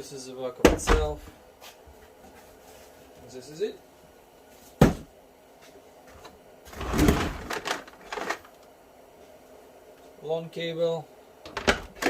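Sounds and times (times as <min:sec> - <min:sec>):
parts and packaging rustling: 0:06.7 - 0:08.7.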